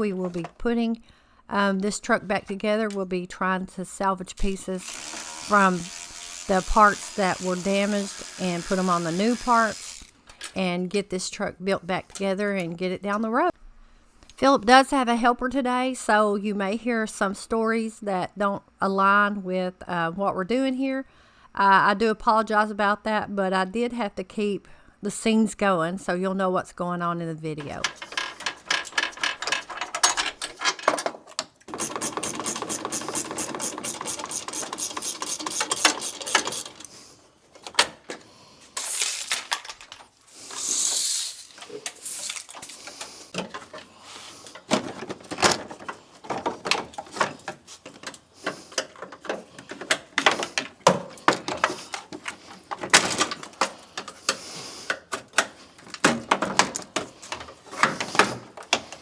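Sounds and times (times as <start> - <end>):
ratchet clicking: 31.7 - 36.9
short air hiss: 40.4 - 42.3.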